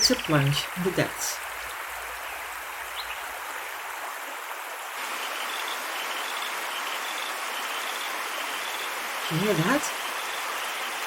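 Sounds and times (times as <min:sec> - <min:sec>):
creek water running: 0:00.0 - 0:11.0.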